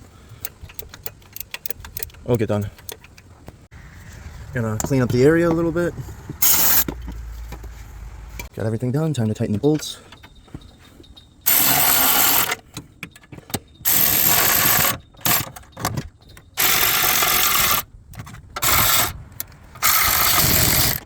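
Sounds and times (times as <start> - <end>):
power tool tightening bolts: 0.4 - 3.3, 6.4 - 7.1, 11.5 - 21.0.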